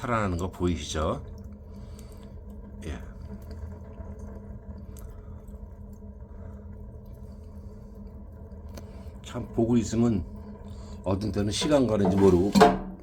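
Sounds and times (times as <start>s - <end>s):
fire crackling: 0.0s - 11.9s
steady low hum: 0.0s - 13.0s.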